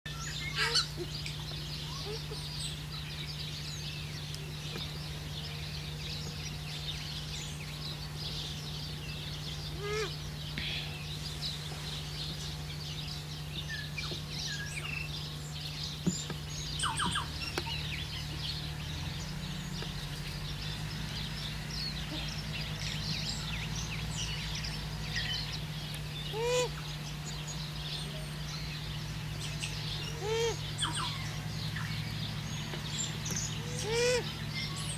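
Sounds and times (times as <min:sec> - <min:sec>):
small birds chirping: 0:00.1 - 0:34.9
steady low hum: 0:00.1 - 0:34.9
loud short bird calls: 0:00.2 - 0:02.6, 0:09.6 - 0:12.6, 0:26.2 - 0:27.1, 0:29.4 - 0:34.9.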